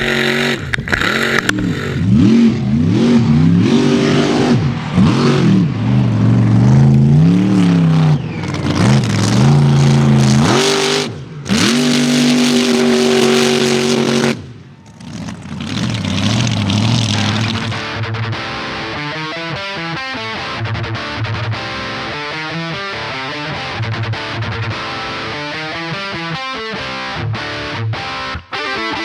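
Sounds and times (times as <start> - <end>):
truck engine revving: 0.0 - 17.9.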